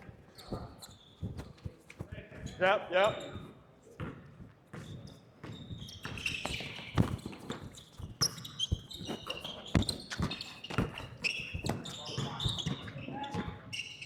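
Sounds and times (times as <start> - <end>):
sneakers squeaking on court: 0.0 - 14.0
basketball bouncing on gym floor: 3.4 - 13.7.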